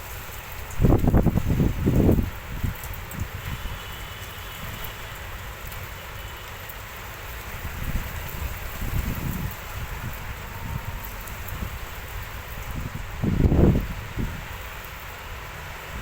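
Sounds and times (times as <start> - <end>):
steady rain falling: 0.0 - 16.0
wind buffeting microphone: 0.4 - 3.8, 7.4 - 14.8.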